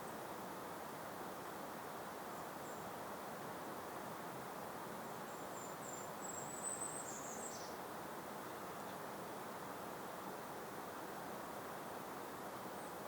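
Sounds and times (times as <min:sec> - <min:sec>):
gentle breeze: 0:00.0 - 0:13.0
songbird singing and trilling: 0:05.0 - 0:07.8.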